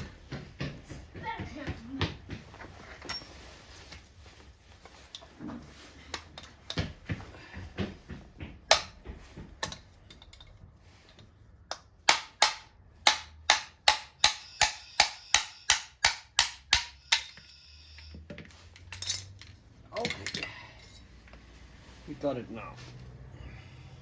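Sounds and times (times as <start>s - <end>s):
hammer striking metal: 12.1s - 17.4s.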